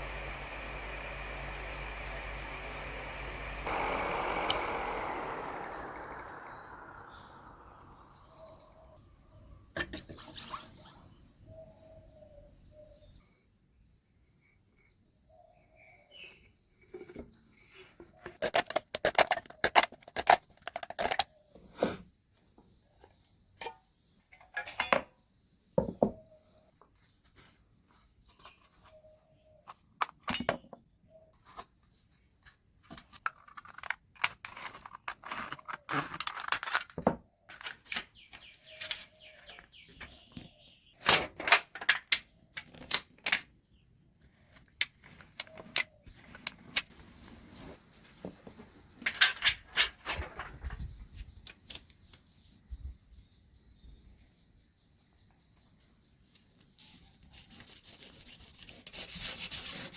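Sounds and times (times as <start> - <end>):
cans crinkling and scraping: 33.2 - 37.8.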